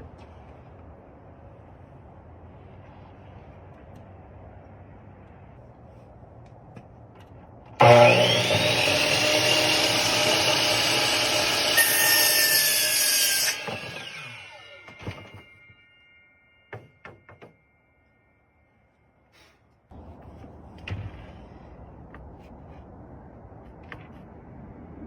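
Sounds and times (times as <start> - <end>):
saw blade cutting wood: 7.8 - 15.8
miter saw whining: 7.8 - 16.2.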